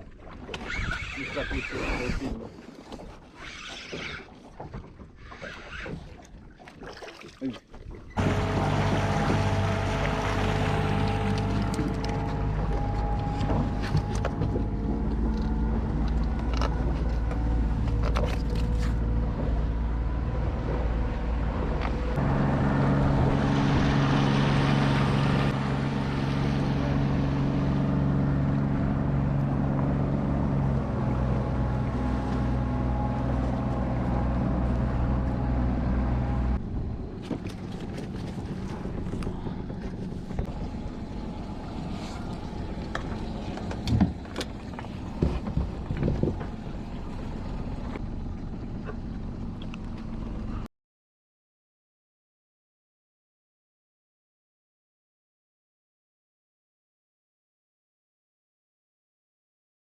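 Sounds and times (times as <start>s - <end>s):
boat engine droning: 0.0s - 3.4s, 8.0s - 50.7s.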